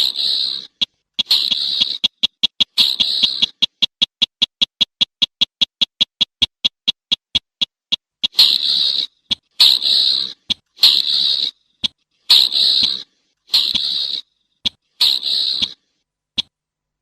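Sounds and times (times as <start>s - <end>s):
raspy bird calls: 0.0s - 4.0s, 7.9s - 16.5s.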